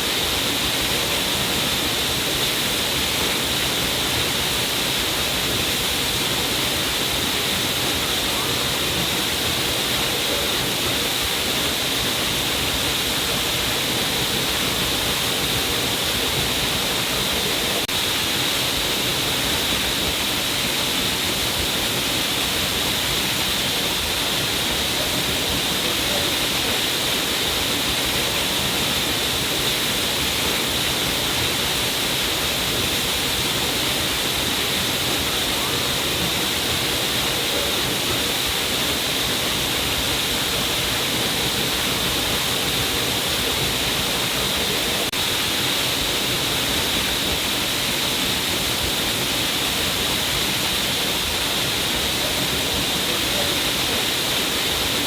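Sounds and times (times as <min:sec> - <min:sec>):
waterfall splashing and rushing: 0:00.0 - 0:55.0.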